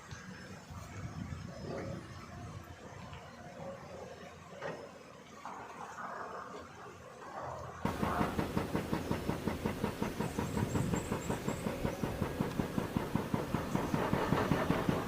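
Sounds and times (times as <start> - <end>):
diesel machinery running: 7.8 - 15.0
rhythmic knocking: 7.9 - 15.0.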